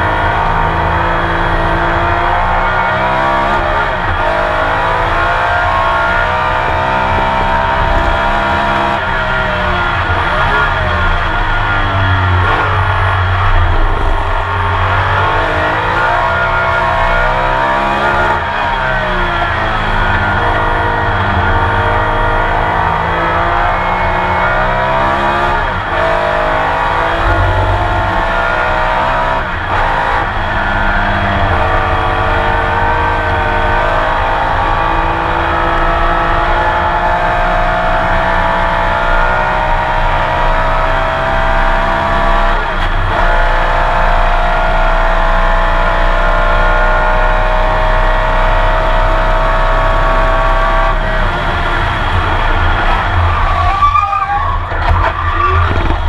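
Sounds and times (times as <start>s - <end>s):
racing engine at full throttle: 0.0s - 56.0s.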